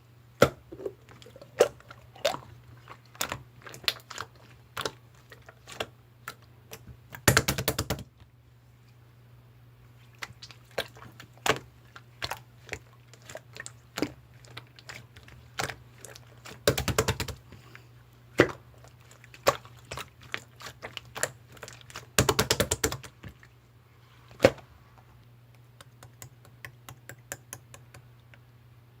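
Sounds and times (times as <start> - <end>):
faint low hum: 0.0 - 29.0
sharp irregular clicks and taps: 25.8 - 28.4.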